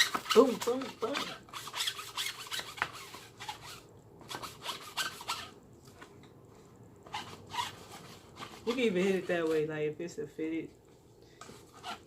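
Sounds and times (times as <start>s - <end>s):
lint roller rubbing fabric: 0.0s - 5.6s, 7.0s - 9.7s, 11.4s - 12.0s.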